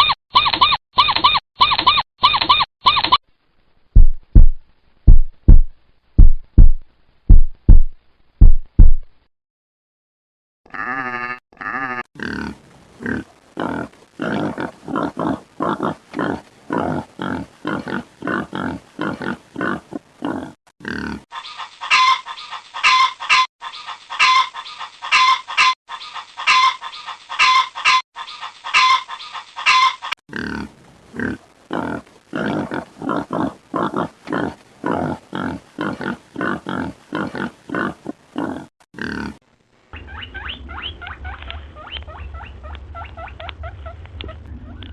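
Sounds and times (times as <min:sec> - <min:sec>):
low thumps: 0:04.0 - 0:09.2.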